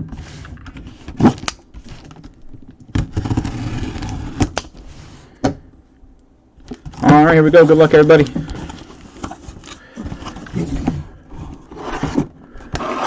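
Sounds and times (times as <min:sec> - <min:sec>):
cardboard scraping and rustling: 0:03.0 - 0:05.3, 0:06.8 - 0:13.0.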